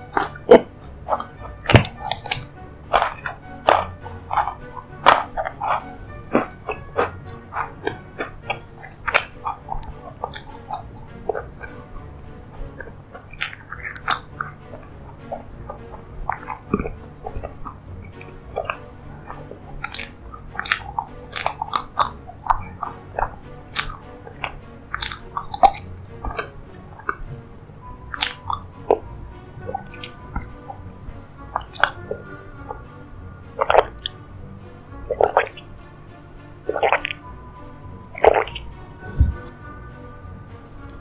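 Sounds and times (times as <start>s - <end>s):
chewing and biting: 0.0s - 11.9s, 12.5s - 27.4s, 28.0s - 34.2s, 35.0s - 35.7s, 36.7s - 37.3s, 38.1s - 38.8s
mouth clicks: 0.0s - 27.2s, 28.0s - 34.2s, 35.0s - 35.9s, 36.6s - 37.3s, 38.0s - 39.6s.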